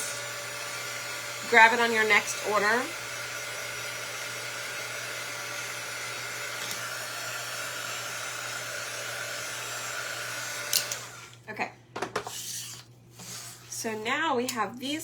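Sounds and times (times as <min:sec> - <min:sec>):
electric blower motor whining: 0:00.0 - 0:11.5.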